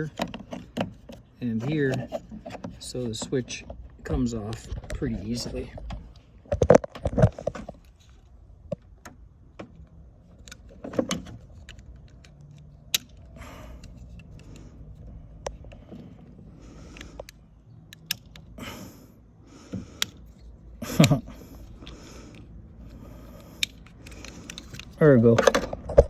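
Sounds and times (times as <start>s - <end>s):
screwdriver scraping plastic: 0.0s - 3.8s, 19.8s - 26.0s
sharp plastic clicks: 8.7s - 15.9s, 16.8s - 18.6s, 19.7s - 26.0s.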